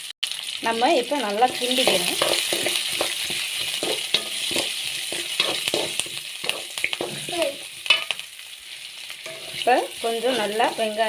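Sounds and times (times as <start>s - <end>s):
vegetables sizzling in hot oil: 0.0s - 11.0s
spatula scraping a pan: 1.5s - 8.2s, 9.1s - 11.0s.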